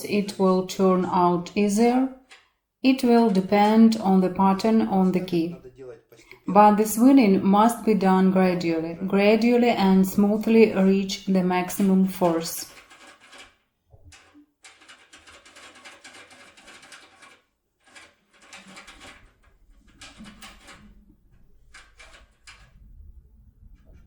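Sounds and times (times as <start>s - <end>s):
metallic clicking and rattling in a lock: 21.7s - 22.8s.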